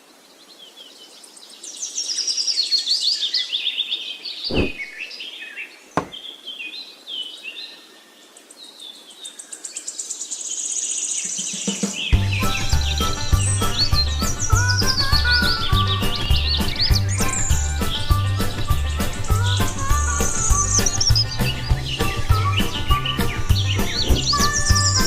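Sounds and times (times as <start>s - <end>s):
songbirds chirping and trilling: 0.0s - 25.0s
short knocks: 6.0s - 6.2s.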